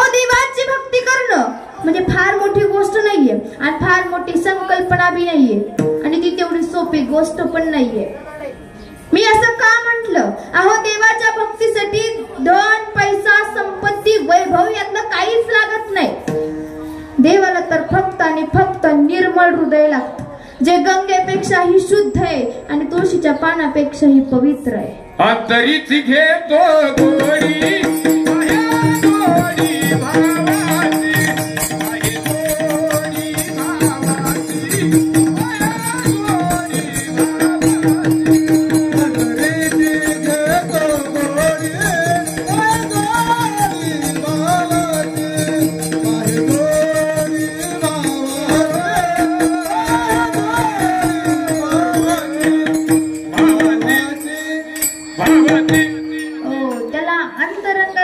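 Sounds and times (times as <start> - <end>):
fast even percussion: 26.0 - 57.1
person singing melody: 26.6 - 57.1.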